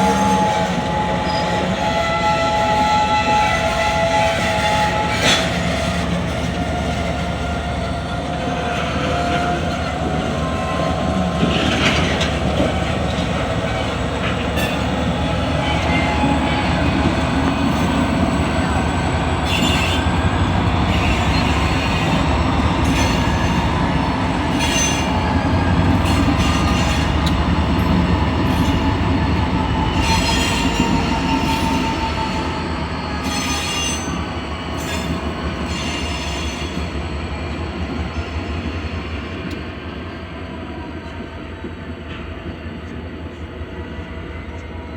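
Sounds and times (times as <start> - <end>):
diesel locomotive rumble: 0.0 - 40.0
railcars clanking: 0.0 - 44.9
wheel squeal: 14.2 - 37.0.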